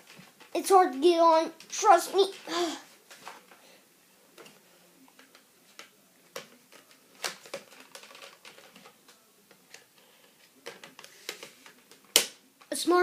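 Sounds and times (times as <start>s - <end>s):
plastic clicks and knocks: 4.4s - 9.9s, 10.6s - 12.7s.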